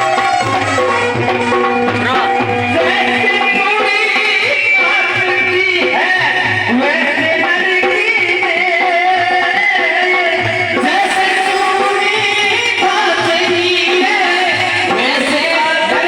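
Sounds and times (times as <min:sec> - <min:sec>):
hand drum beat: 0:00.0 - 0:07.4
instrumental accompaniment: 0:00.0 - 0:16.0
person singing devotional song: 0:00.0 - 0:16.0.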